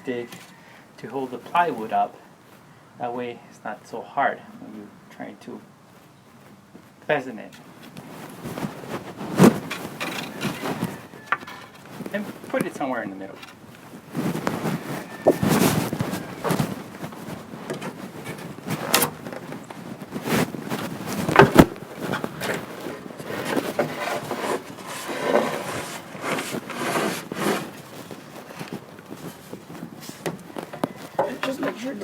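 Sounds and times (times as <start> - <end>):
plywood sheet knocking and scraping: 8.5 - 32.0.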